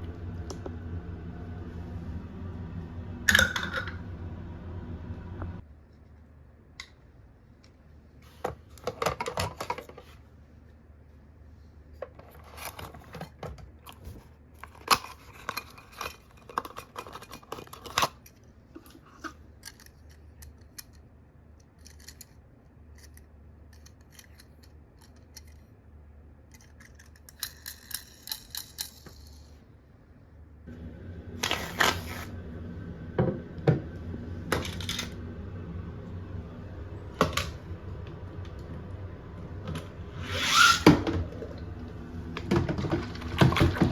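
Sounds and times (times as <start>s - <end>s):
toy cars clicking and rattling: 14.7s - 25.6s, 26.5s - 29.6s.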